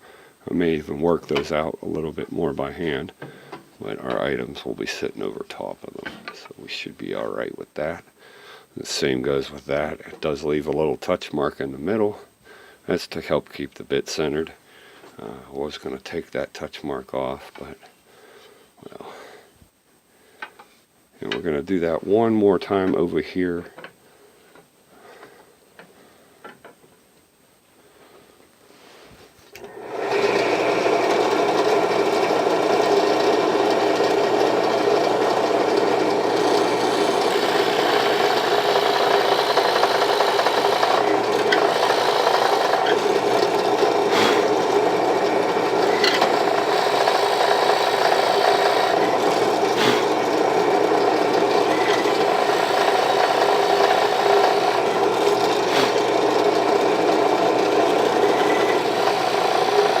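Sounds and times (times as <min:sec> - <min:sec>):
power drill boring into wood: 0:29.6 - 1:00.0.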